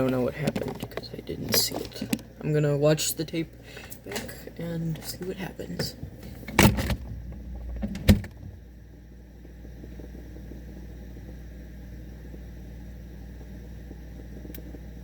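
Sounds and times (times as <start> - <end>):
muffled fridge hum: 0.0 - 15.0
fridge door shutting thud: 5.8 - 8.7.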